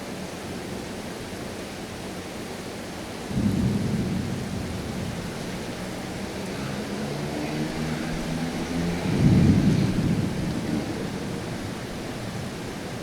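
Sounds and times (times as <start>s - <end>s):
steady rain: 0.0s - 13.0s
thunder rumble: 3.3s - 13.0s.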